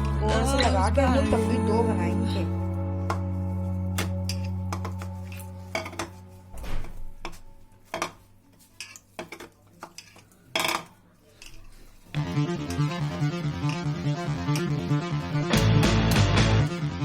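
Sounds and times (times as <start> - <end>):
utensils and dishes clinking: 4.0 - 11.9.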